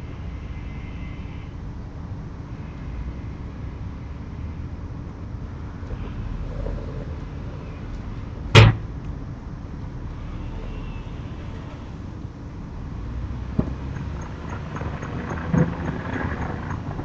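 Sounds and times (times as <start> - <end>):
car rumble: 1.6 - 17.0
sharp loud bang: 8.6 - 8.9.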